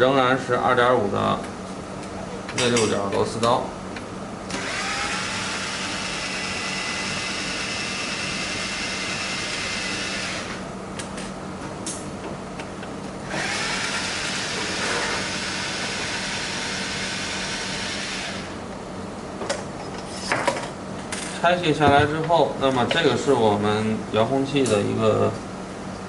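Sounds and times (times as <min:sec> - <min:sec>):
electric screwdriver whining: 0:04.5 - 0:10.6, 0:13.3 - 0:18.6.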